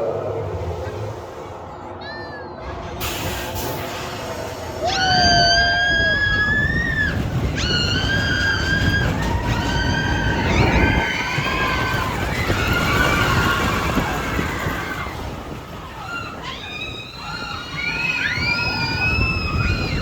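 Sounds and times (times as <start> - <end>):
roller coaster train rumble: 0.0 - 20.0
riders screaming: 4.8 - 20.0
wind rushing past microphone: 4.9 - 20.0.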